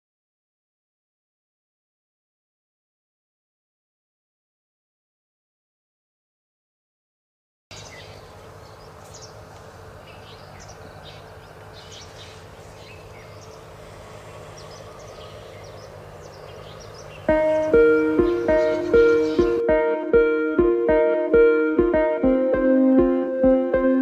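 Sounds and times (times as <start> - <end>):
low background hum: 7.7 - 19.6
birds chirping: 7.7 - 24.0
plucked-string music: 17.2 - 24.0.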